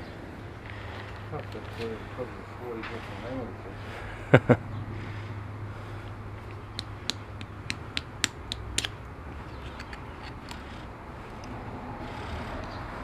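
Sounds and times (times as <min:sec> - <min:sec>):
light sharp clicks and creaks: 0:09.5 - 0:12.8.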